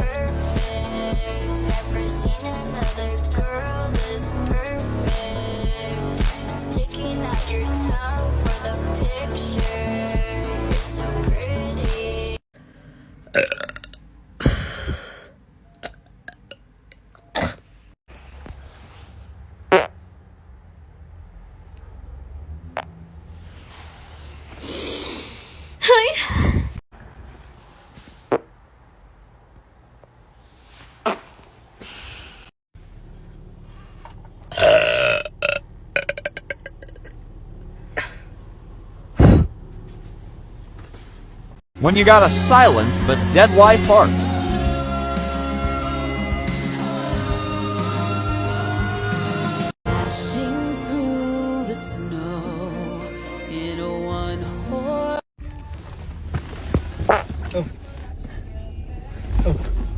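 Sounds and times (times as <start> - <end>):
person burping: 13.3 - 15.2, 34.5 - 37.0
farts: 19.7 - 19.9.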